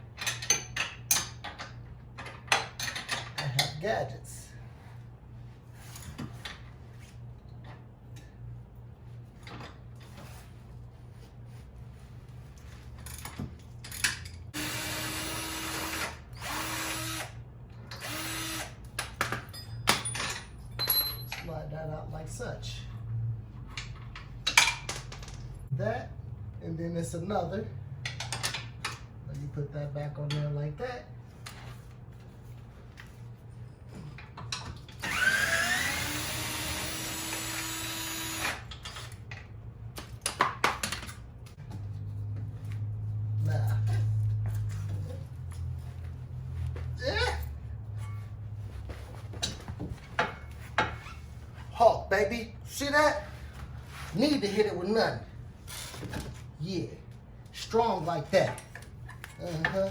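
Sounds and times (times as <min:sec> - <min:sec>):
cordless drill whine: 0:14.6 - 0:17.3, 0:18.0 - 0:18.8, 0:35.0 - 0:38.6.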